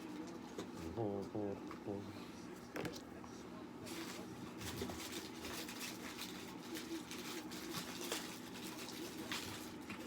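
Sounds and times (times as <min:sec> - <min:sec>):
cats' paws pattering and scratching: 0:02.6 - 0:10.0.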